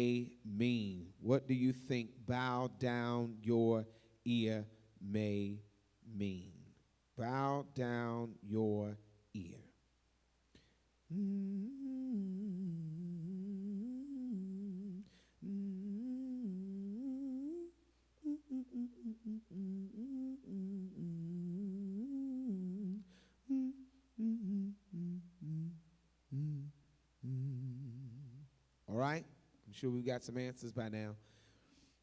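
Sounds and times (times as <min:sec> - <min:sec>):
person humming a tune: 0:11.1 - 0:28.5.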